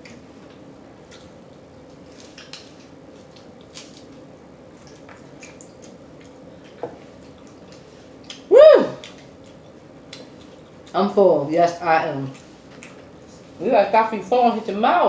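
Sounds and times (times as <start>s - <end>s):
wet smacking and chewing: 4.8s - 11.0s.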